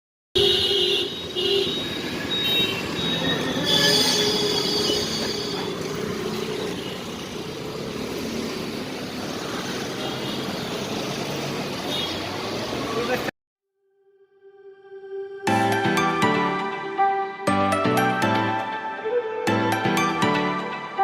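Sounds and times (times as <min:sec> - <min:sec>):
road traffic noise: 0:00.4 - 0:13.3, 0:15.5 - 0:21.0
short high tones: 0:03.0 - 0:05.6.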